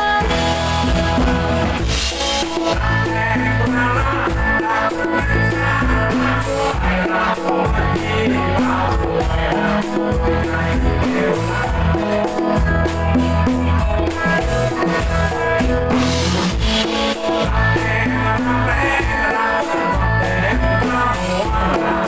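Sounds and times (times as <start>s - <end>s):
drum kit beat: 0.0s - 22.0s
live band playing: 0.0s - 22.0s.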